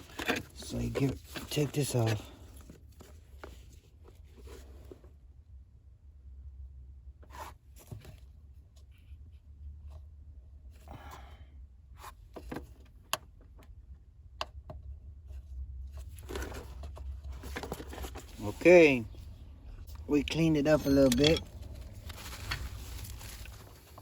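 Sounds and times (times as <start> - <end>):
scraping rustle: 16.0 - 24.0.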